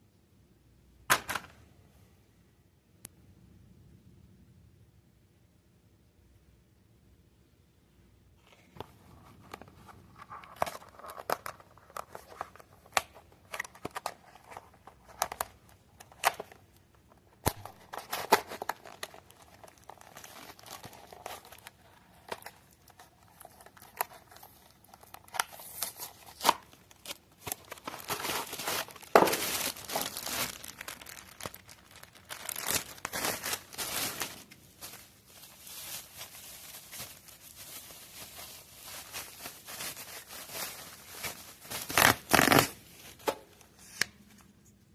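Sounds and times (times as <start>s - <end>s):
packaging crinkling and tearing: 9.4s - 16.6s, 17.3s - 44.1s.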